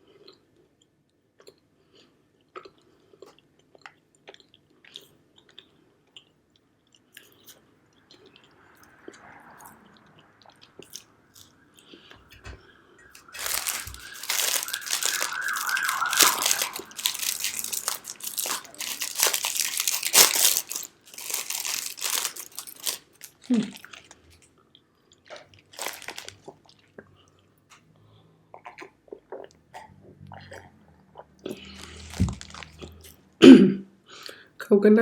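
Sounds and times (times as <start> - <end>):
quiet chewing: 0.0 - 27.9, 28.5 - 33.2
plastic wrapper crinkling: 13.1 - 24.4, 25.3 - 26.7, 31.5 - 33.2.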